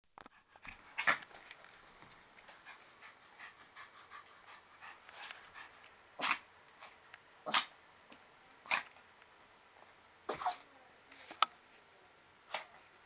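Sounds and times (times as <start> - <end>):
dog sneezing: 6.2 - 6.4, 10.3 - 10.6.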